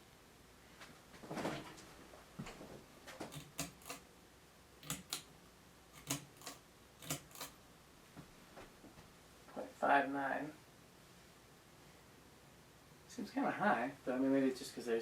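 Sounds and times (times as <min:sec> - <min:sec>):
ceiling fan running: 0:00.8 - 0:09.5.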